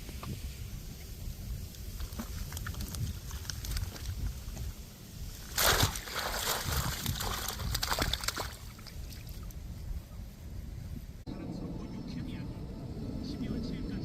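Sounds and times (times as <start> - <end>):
water splashing and sloshing: 1.7 - 9.6.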